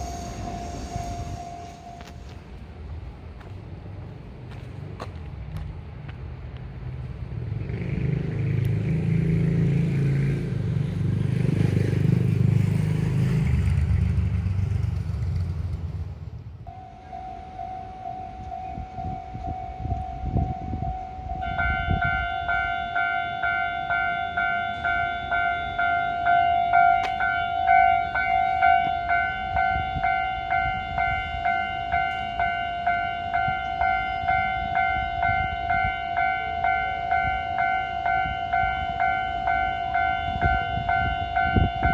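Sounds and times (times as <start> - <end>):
level crossing warning bell: 0.0 - 2.4, 16.7 - 41.9
vehicle passing by: 6.8 - 16.5.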